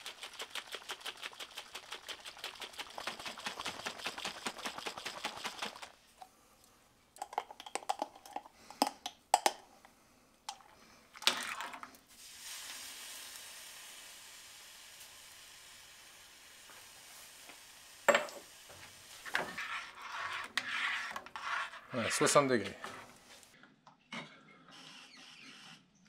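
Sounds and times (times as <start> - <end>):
steady hiss: 12.1 - 19.3.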